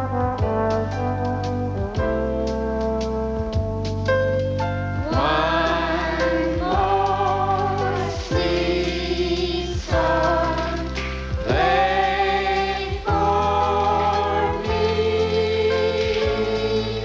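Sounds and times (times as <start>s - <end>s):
instrumental backing: 0.0s - 17.0s
group of voices singing: 5.0s - 17.0s.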